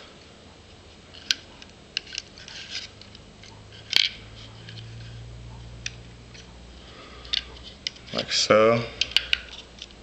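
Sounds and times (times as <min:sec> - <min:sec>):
small metal clicks and scrapes: 0:01.1 - 0:05.2.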